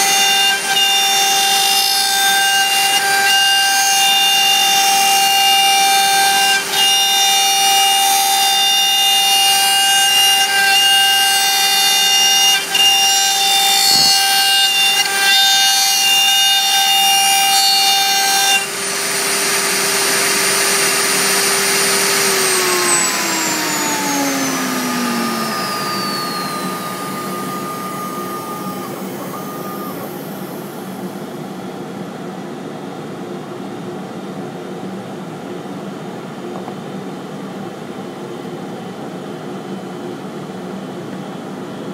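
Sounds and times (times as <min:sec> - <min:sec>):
router spindle whining: 0:00.0 - 0:31.5.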